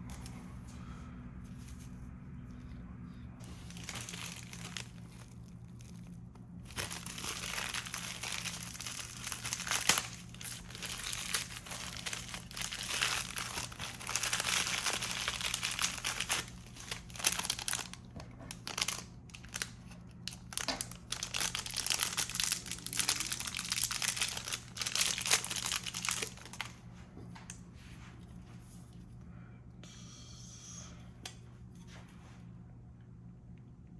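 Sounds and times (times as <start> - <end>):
steady low hum: 0.0 - 33.9
plastic or paper crinkling: 3.4 - 26.8.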